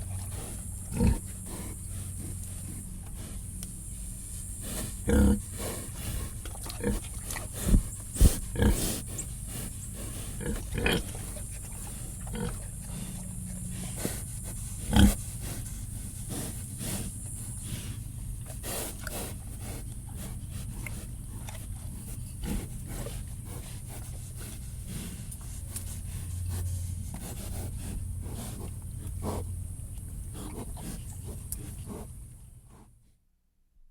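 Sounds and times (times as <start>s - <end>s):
pigs grunting: 0.0s - 3.5s, 4.6s - 17.2s, 25.8s - 29.6s, 30.3s - 32.9s.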